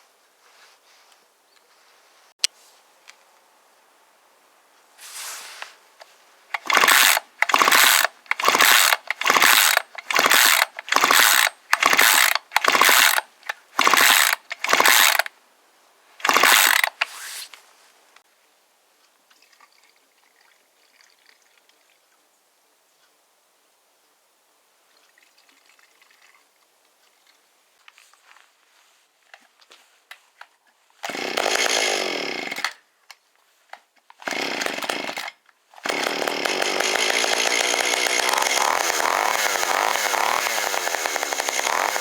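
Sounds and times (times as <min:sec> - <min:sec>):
ratchet rasping: 0:06.6 - 0:13.2, 0:13.8 - 0:15.3, 0:16.2 - 0:17.0, 0:35.9 - 0:42.0.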